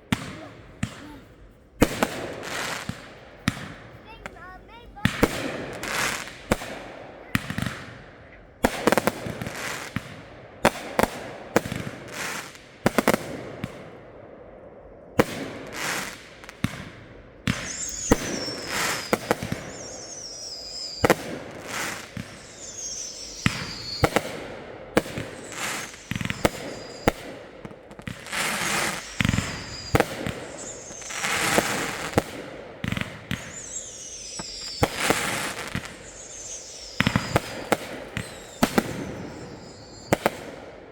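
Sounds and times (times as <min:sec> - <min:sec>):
fireworks crackling: 0:00.0 - 0:13.8, 0:15.2 - 0:40.9
fireworks bangs: 0:00.0 - 0:14.0, 0:15.2 - 0:40.9
falling whistles: 0:17.5 - 0:24.3, 0:25.1 - 0:27.3, 0:28.4 - 0:32.2, 0:33.3 - 0:40.3.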